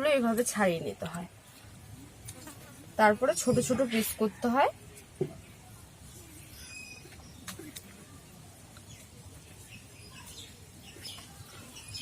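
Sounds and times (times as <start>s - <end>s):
faint bird chirps: 5.4s - 12.0s.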